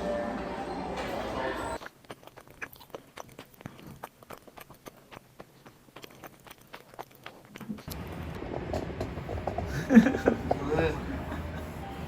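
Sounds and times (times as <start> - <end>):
person chewing crunchily: 1.8 - 9.7.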